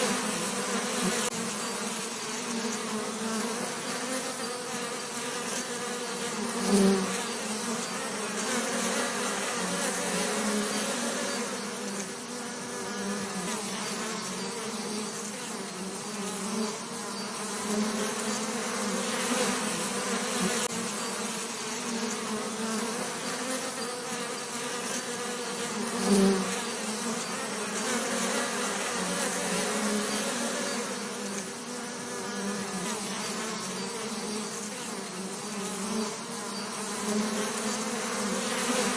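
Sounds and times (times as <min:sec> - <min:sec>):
bees buzzing: 0:00.0 - 0:38.9.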